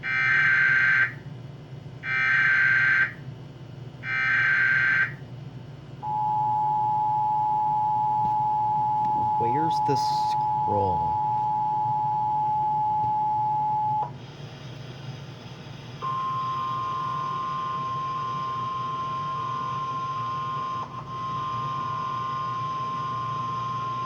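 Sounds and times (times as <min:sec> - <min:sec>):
two-tone attention signal: 0:16.0 - 0:24.0.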